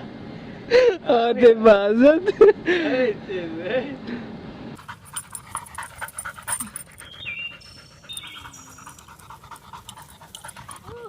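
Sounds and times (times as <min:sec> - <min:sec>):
dog panting: 0:04.8 - 0:11.0.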